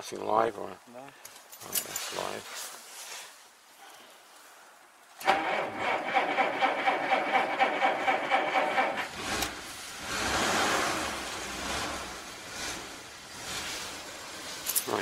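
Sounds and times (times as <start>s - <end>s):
car engine cranking and starting: 5.2s - 15.0s.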